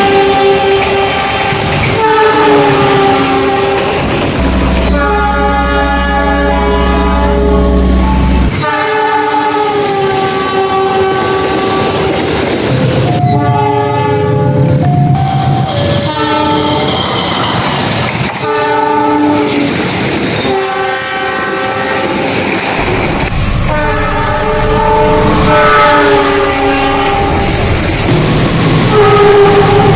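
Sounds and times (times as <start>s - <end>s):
locomotive air horns: 0.0s - 12.2s, 13.0s - 17.8s, 18.4s - 19.7s, 20.4s - 22.5s, 23.6s - 27.8s, 28.7s - 29.9s
train wheel clatter: 9.6s - 13.4s, 16.8s - 23.3s.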